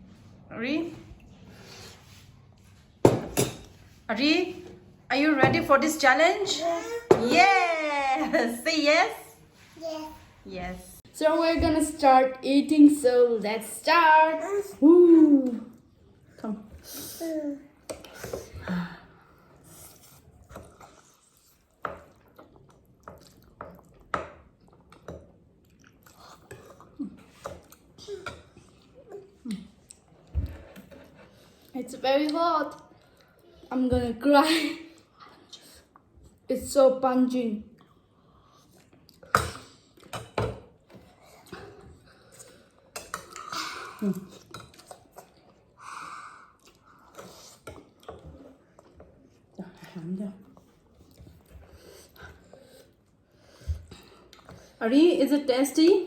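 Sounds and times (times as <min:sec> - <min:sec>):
wet eating sounds: 0:19.5 - 0:33.7, 0:37.7 - 0:54.8.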